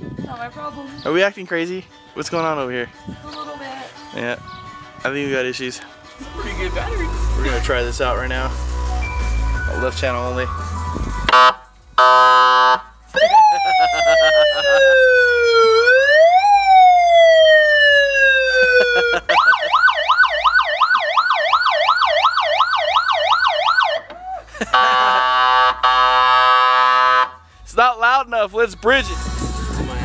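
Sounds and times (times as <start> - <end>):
buzzy siren horn tone: 11.3 - 13.8, 24.8 - 27.4
rapid siren yelp: 11.3 - 27.4
siren wail: 11.3 - 27.4.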